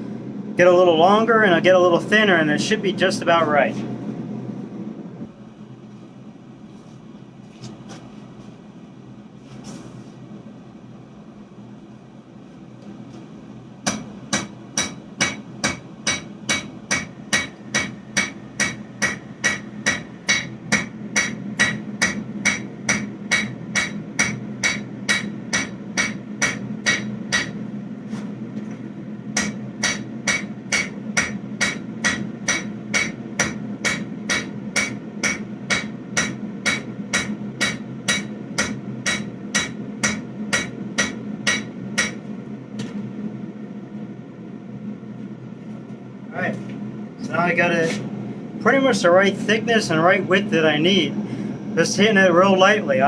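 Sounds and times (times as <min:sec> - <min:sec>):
steady low hum: 0:00.0 - 0:53.0
hammer striking steel on anvil: 0:13.8 - 0:27.6, 0:29.4 - 0:42.3.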